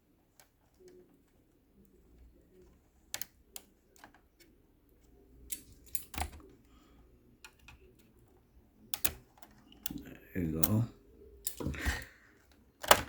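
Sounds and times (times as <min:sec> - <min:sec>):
plastic clicks and snaps: 0:03.1 - 0:04.6, 0:05.4 - 0:06.6, 0:08.9 - 0:10.8, 0:11.4 - 0:13.0.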